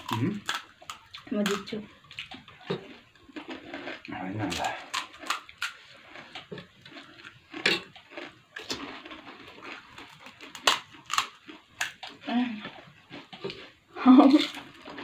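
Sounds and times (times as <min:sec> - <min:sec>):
crisp shells being crunched: 0:03.3 - 0:12.2.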